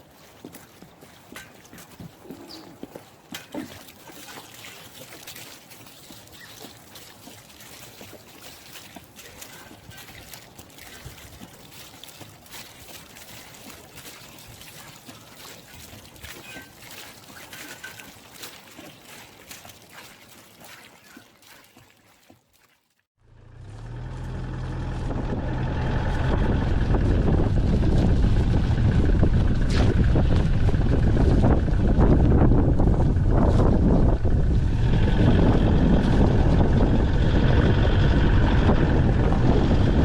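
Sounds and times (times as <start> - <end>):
steady low rumble with hum: 24.2 - 40.0.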